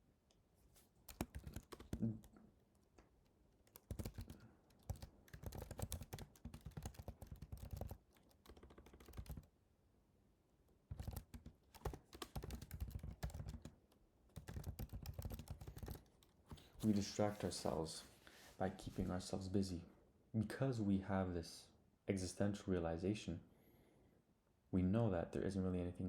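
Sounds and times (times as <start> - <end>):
typing on computer keyboard: 1.1 - 2.4, 3.6 - 9.5, 10.9 - 16.4.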